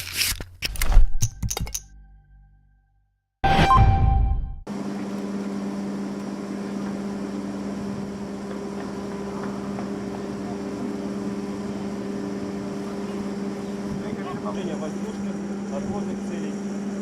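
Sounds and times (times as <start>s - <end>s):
ship machinery hum: 4.7s - 17.0s.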